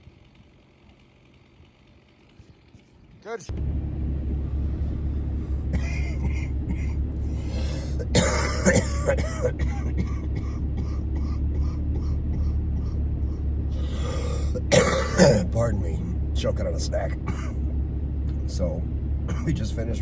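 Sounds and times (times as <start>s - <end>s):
vehicle engine hum: 0.0s - 20.0s
man coughing: 5.6s - 13.0s, 14.0s - 15.7s, 17.2s - 17.6s, 19.3s - 19.6s.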